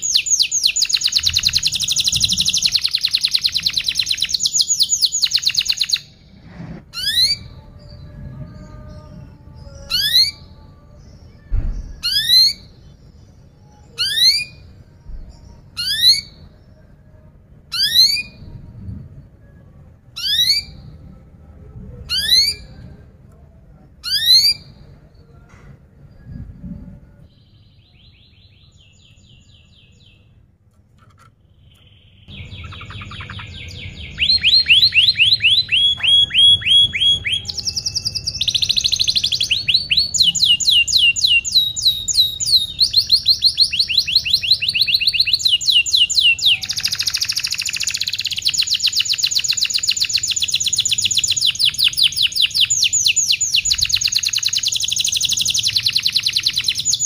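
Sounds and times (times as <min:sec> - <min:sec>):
canary singing trills: 0:00.0 - 0:18.6, 0:20.1 - 0:21.1, 0:22.0 - 0:23.0, 0:24.0 - 0:25.0, 0:31.4 - 0:57.0.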